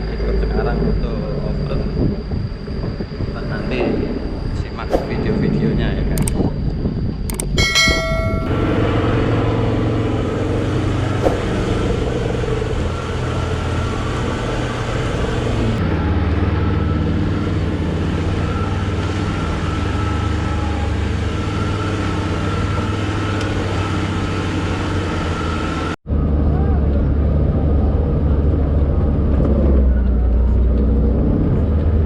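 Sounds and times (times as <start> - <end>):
car engine running while driving: 7.6 - 32.0.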